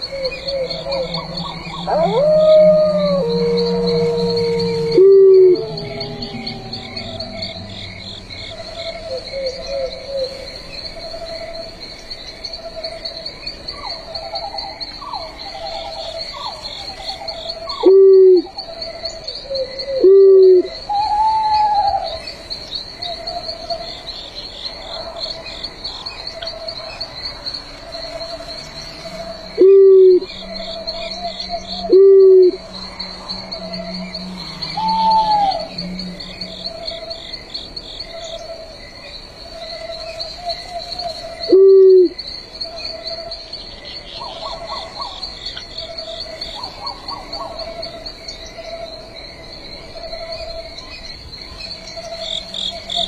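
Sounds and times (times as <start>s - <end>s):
owl hooting: 0.0s - 8.0s, 17.7s - 18.6s, 19.5s - 22.2s, 29.2s - 37.2s, 40.6s - 42.2s
crickets trilling: 0.0s - 53.0s
frogs calling: 0.0s - 53.0s.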